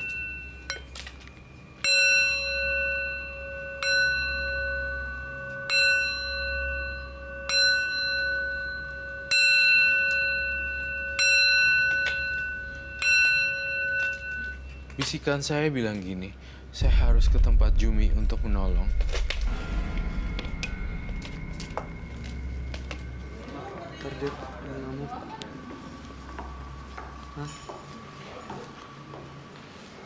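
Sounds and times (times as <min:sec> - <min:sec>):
bell ringing: 0:01.7 - 0:15.0
low hum: 0:16.6 - 0:24.8.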